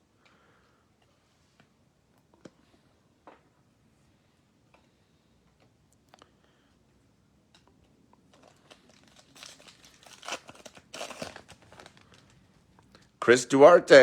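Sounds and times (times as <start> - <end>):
foil pack tearing: 8.3 - 12.4
wrapper crinkling: 8.3 - 13.1.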